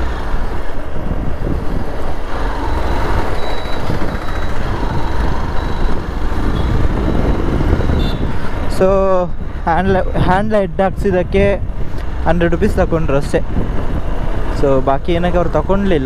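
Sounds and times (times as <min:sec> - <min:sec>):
wind rushing over microphone: 0:00.0 - 0:16.0
motorcycle engine: 0:02.1 - 0:08.6.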